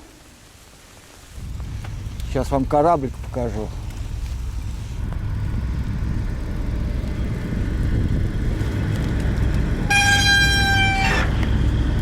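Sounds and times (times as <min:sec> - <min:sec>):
diesel engine rumble: 0:01.3 - 0:12.0.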